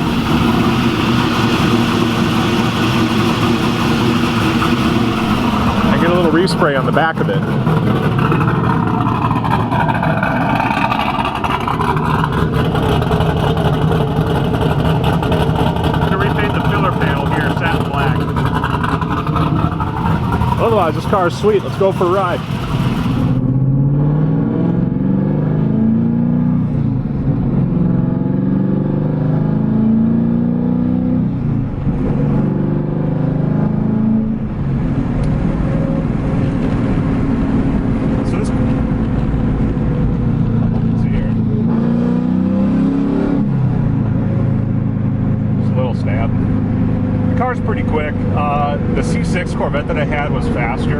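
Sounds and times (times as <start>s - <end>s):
car engine idling: 0.0s - 23.4s, 34.2s - 41.7s, 43.5s - 50.9s.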